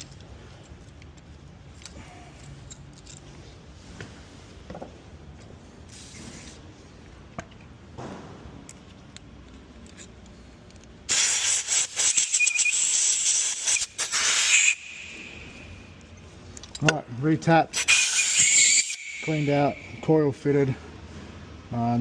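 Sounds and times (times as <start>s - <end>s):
tool handling clicks: 0.0s - 3.5s, 8.6s - 11.1s, 15.9s - 17.0s
compressed air hissing: 5.9s - 6.6s, 11.1s - 15.8s, 17.8s - 20.0s.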